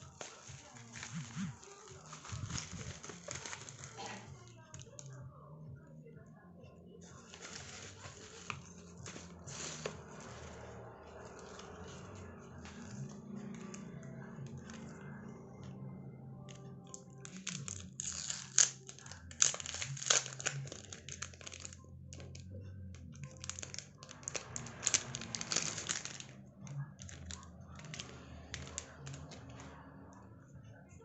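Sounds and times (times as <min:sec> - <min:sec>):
packaging crinkling and rustling: 0:00.0 - 0:05.0, 0:07.2 - 0:13.8, 0:17.2 - 0:21.8, 0:23.2 - 0:26.4, 0:27.0 - 0:29.6.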